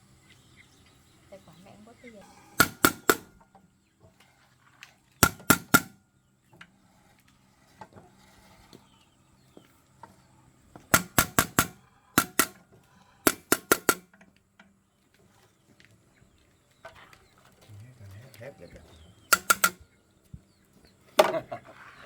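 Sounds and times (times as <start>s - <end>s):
metal tapping on metal: 2.3s - 3.6s, 5.2s - 6.0s, 10.8s - 14.7s, 19.3s - 19.9s
small clicks: 19.3s - 19.9s.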